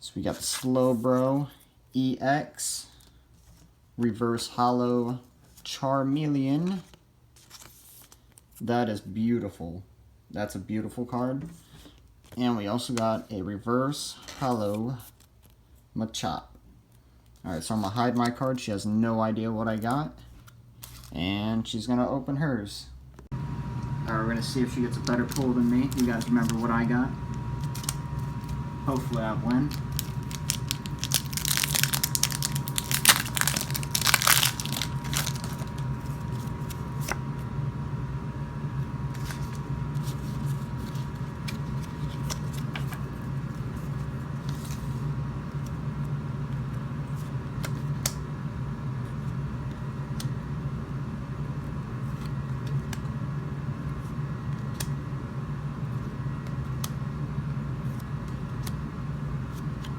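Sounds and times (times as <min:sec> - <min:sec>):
foil wrapper tearing and crinkling: 0:20.8 - 0:21.2, 0:24.7 - 0:27.0, 0:27.6 - 0:37.2, 0:39.1 - 0:43.1
steady low hum: 0:23.0 - 0:59.9
cards clicking: 0:23.8 - 0:37.2.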